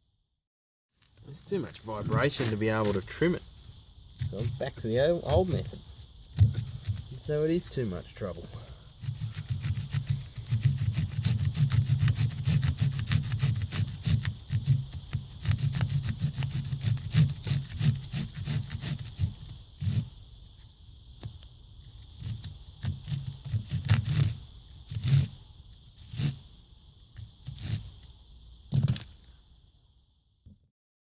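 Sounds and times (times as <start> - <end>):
hand tool rubbing strokes: 1.0 - 20.2, 21.2 - 26.5.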